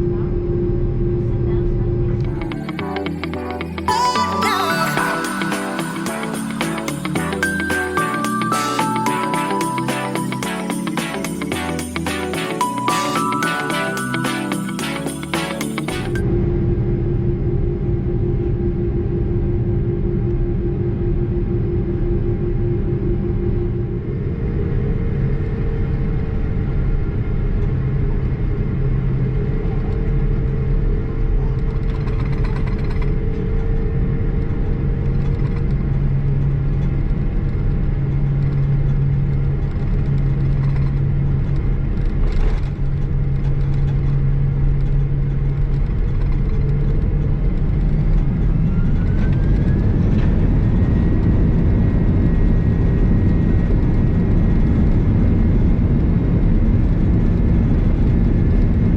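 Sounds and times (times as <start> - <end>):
engine whine rising in pitch: 16.2 - 31.5, 33.2 - 58.9.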